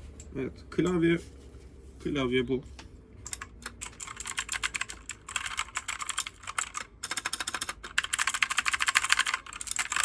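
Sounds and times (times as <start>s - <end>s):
mechanical keyboard keys clacking: 3.3s - 10.0s.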